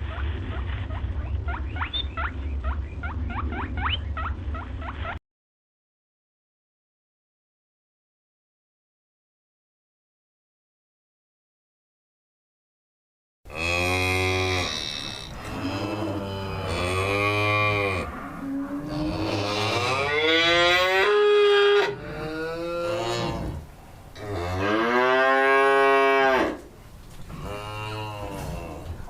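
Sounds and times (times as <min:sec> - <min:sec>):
cattle mooing: 0:13.5 - 0:26.7, 0:27.3 - 0:29.0.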